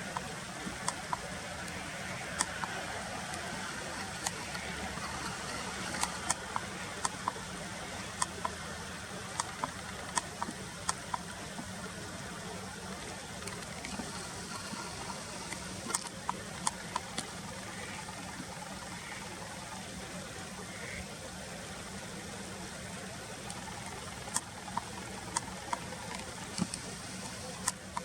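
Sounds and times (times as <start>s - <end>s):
traffic noise: 0.0s - 11.8s
running water: 0.0s - 28.0s.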